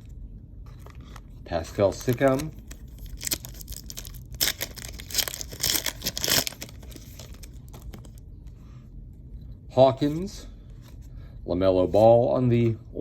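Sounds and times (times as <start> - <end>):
wrapper tearing and crinkling: 1.8 - 8.2.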